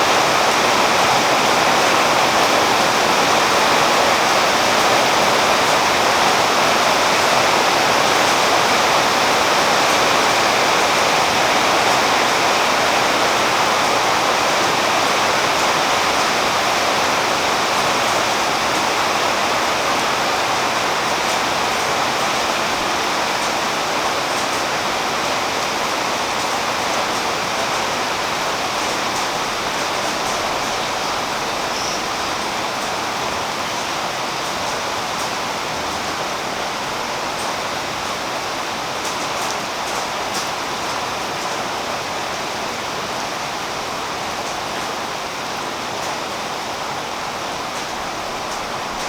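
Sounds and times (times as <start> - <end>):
rain falling on leaves: 0.0 - 49.0.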